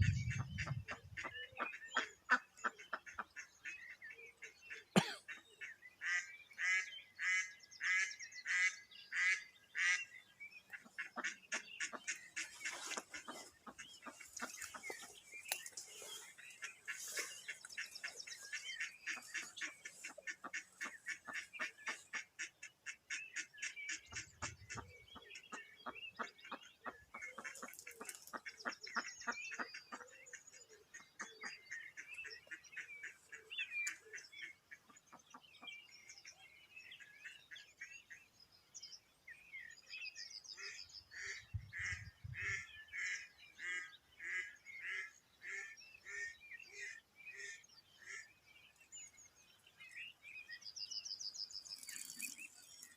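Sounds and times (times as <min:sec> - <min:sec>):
duck quacking: 0:00.0 - 0:03.5, 0:04.9 - 0:05.4
songbirds singing: 0:00.0 - 0:52.9.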